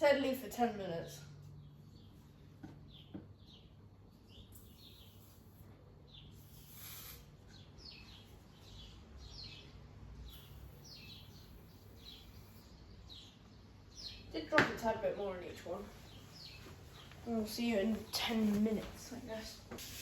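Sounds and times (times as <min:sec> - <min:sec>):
small bird chirping: 0:01.3 - 0:14.5.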